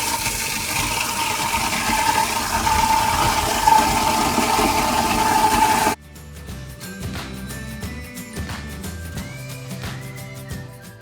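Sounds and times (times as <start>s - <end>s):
food waste disposer grinding: 0.0s - 6.0s
tap water pouring: 0.0s - 6.0s.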